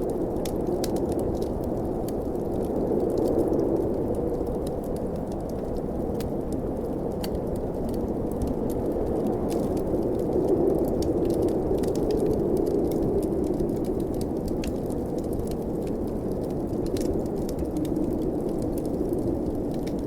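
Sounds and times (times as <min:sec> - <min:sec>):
blizzard wind howling: 0:00.0 - 0:20.0
wood fire crackling: 0:00.0 - 0:20.0.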